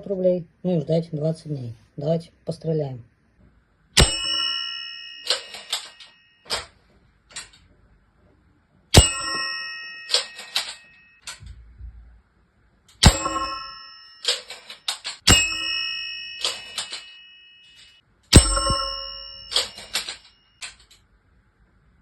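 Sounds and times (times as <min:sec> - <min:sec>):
pellets ringing on steel target: 0:04.0 - 0:06.6, 0:09.0 - 0:11.1, 0:13.0 - 0:20.4
target clanking: 0:18.3 - 0:20.3.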